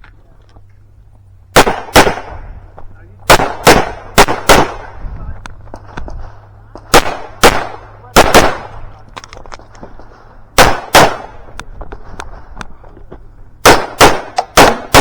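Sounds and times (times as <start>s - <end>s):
pistol shots: 1.5s - 2.5s, 3.2s - 5.0s, 5.8s - 8.9s, 9.9s - 11.6s, 13.6s - 15.0s.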